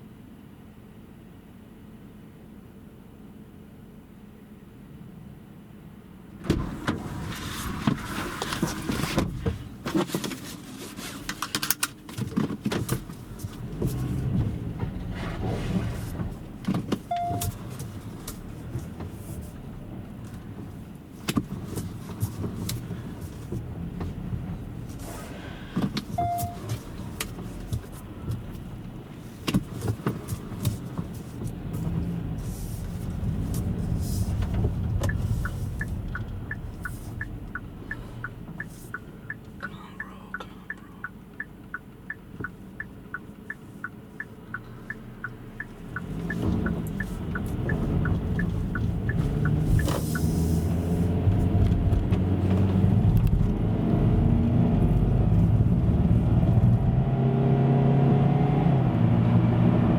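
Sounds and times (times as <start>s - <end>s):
car engine: 0.0s - 59.9s
road noise: 0.0s - 59.9s
rapid regular ticking: 35.1s - 50.3s.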